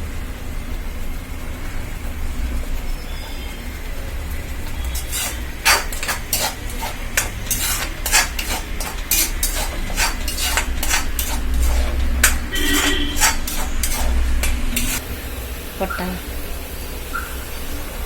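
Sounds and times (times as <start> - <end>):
paste frying in oil: 4.3 - 15.1
spoon scraping and clanking in pan: 4.6 - 15.0.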